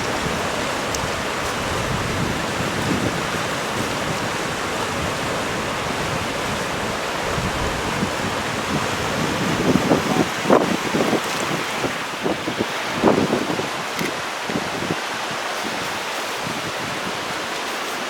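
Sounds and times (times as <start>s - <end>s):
rain falling: 0.0s - 18.0s.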